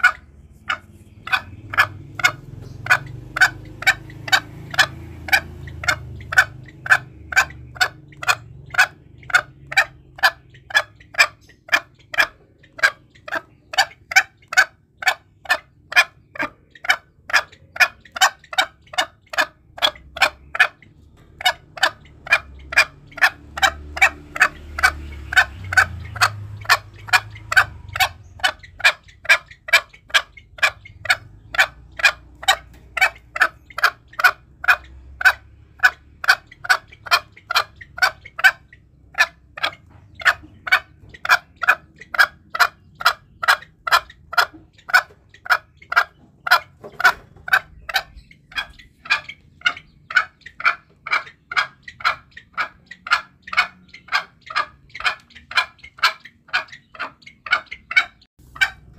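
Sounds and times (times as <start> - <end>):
junglefowl calling: 0.0 - 58.9.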